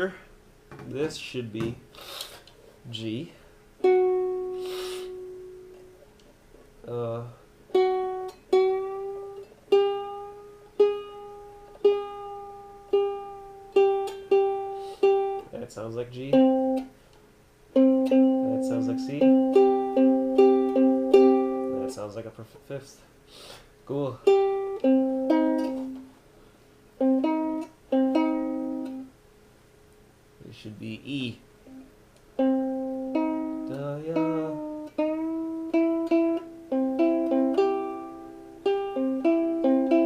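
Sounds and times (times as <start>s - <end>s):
ukulele string plucked: 7.7s - 15.5s, 16.3s - 16.9s, 17.8s - 22.0s, 24.2s - 26.1s, 27.0s - 29.1s, 32.4s - 40.0s.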